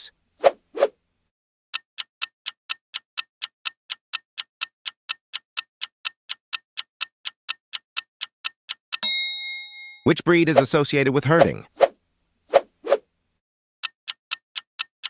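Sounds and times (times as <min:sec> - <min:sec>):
clock ticking: 0:01.7 - 0:09.1, 0:13.8 - 0:15.0.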